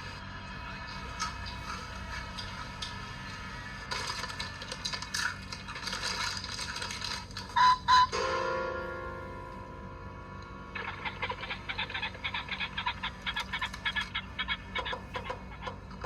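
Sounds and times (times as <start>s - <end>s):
scattered clicks and rustle: 0.9s - 7.6s
music: 7.9s - 14.5s
steady pitched tone: 7.9s - 15.6s.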